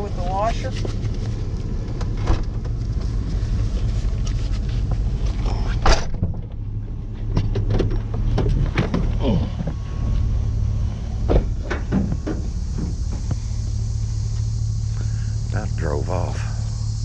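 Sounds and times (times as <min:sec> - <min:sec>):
engine running: 0:00.0 - 0:17.0
knocks and clatters: 0:05.7 - 0:09.8, 0:11.2 - 0:13.4.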